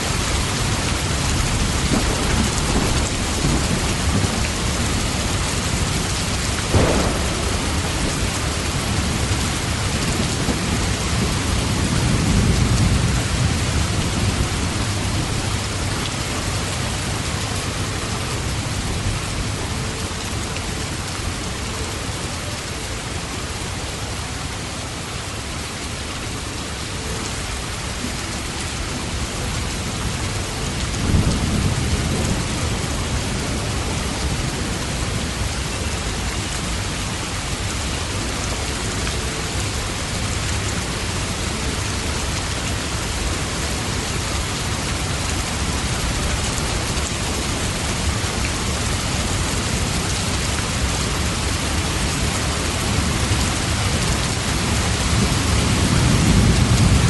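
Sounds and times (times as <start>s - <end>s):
heavy rain falling: 0.0s - 57.0s
thunder rumbling: 0.2s - 20.2s, 29.2s - 35.7s, 43.7s - 57.0s
thunder crack: 6.6s - 11.5s.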